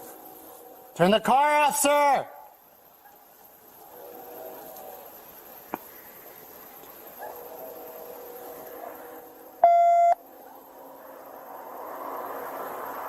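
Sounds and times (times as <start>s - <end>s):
faint steady hum: 2.2s - 11.8s
electronic beep: 9.6s - 10.2s.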